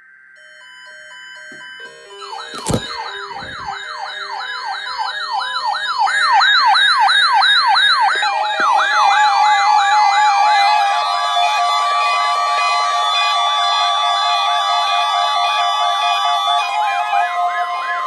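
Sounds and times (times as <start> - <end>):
electronic siren yelping: 0.4 - 18.0
steady high tone: 0.4 - 18.0
short beeps: 1.4 - 5.3.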